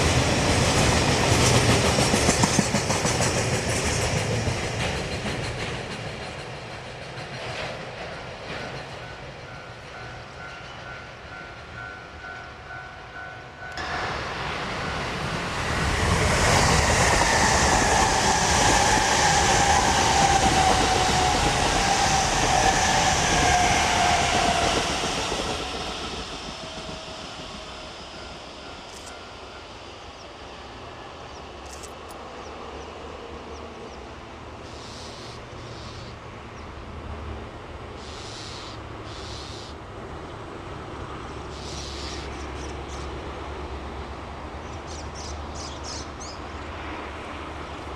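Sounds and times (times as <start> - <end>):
electric train running past: 0.0 - 47.9.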